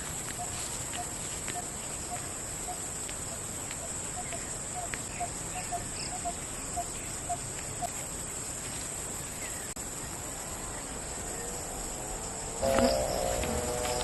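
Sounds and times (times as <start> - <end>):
bird calling: 0.0 - 7.9, 12.4 - 14.0
insects buzzing: 0.0 - 14.0.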